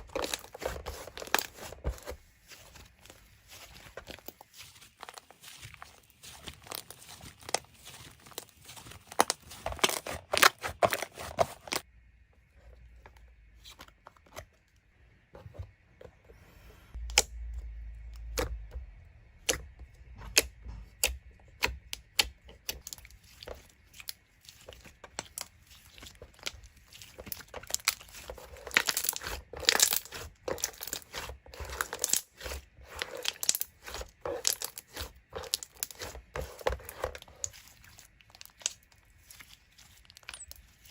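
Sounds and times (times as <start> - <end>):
slime squishing clicks and crackles: 19.4 - 40.8.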